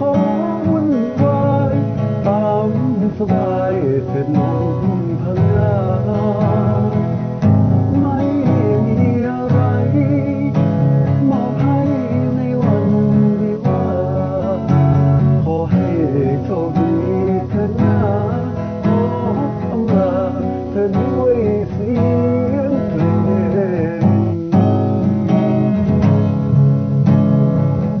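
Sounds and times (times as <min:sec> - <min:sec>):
strummed guitar: 0:00.0 - 0:28.0.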